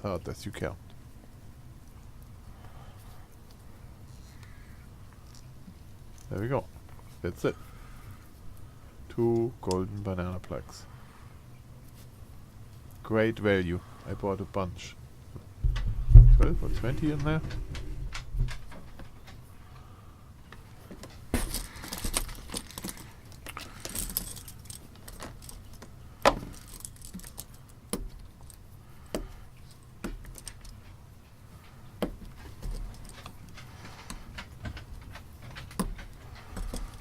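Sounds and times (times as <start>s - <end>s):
rustling: 1.8s - 9.0s, 15.4s - 37.0s
small metal plugs clinking: 21.1s - 28.6s.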